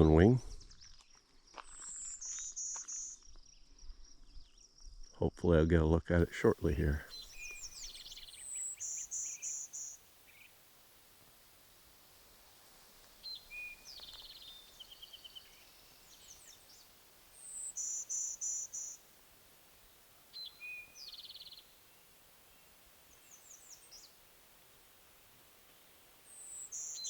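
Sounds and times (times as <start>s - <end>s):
warbler buzzy song: 0.0s - 5.0s, 6.3s - 27.0s
bird clear notes and buzzy trill: 6.4s - 10.6s, 13.2s - 19.0s.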